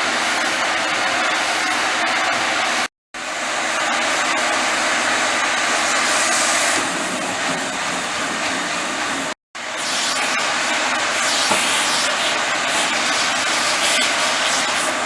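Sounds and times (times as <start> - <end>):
water spraying onto a filter: 9.7 - 15.0.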